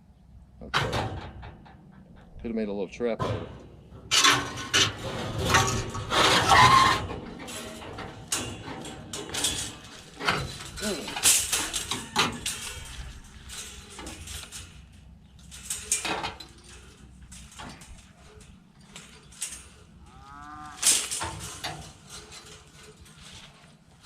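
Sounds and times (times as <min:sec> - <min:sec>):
scrap knocking and clattering: 0:03.2 - 0:20.0, 0:20.8 - 0:24.0
pitched squeak: 0:05.5 - 0:07.8.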